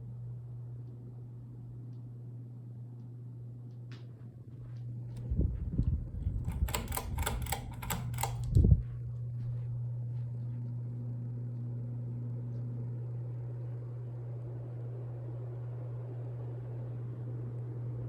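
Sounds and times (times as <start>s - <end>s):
ceiling fan motor hum: 0.0s - 18.0s
sharp clicks and knocks: 6.2s - 8.6s.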